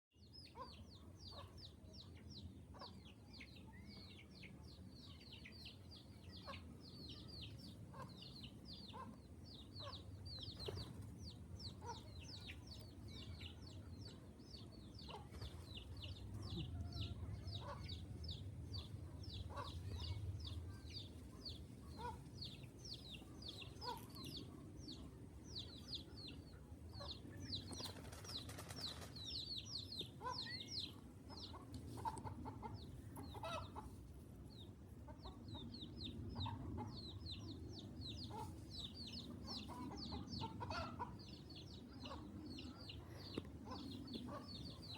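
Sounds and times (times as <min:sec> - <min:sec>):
birds chirping: 0:00.2 - 0:44.9.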